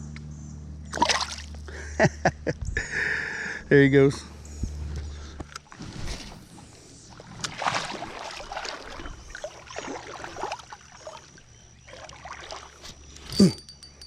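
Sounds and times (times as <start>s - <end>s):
water splashing and gurgling: 0.9s - 1.8s, 5.7s - 13.7s.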